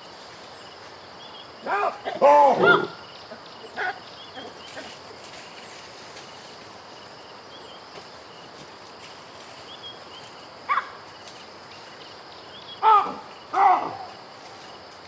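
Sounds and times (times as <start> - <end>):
outdoor background hiss: 0.0 - 15.0
baboon calling: 1.6 - 5.0, 12.8 - 14.1.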